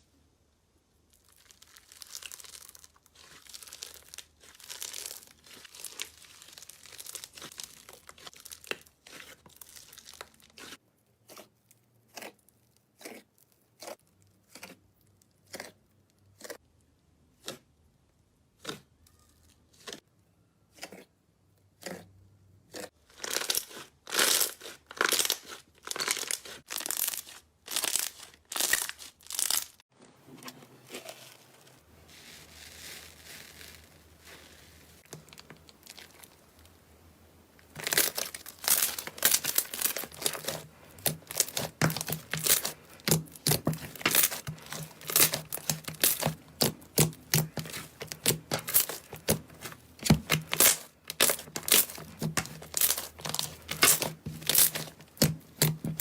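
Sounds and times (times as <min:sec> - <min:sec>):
slime crackling squeezed by hand: 0:01.1 - 0:10.8, 0:23.1 - 0:29.8, 0:37.7 - 0:56.0.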